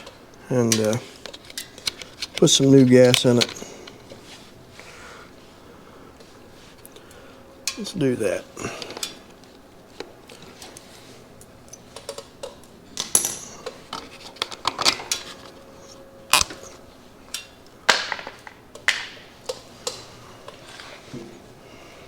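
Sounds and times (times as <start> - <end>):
metal tools clanking: 0.6 - 4.2, 13.0 - 16.7.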